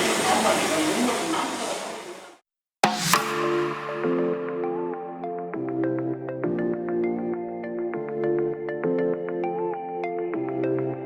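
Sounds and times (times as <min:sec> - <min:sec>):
light electronic music: 0:02.9 - 0:11.0.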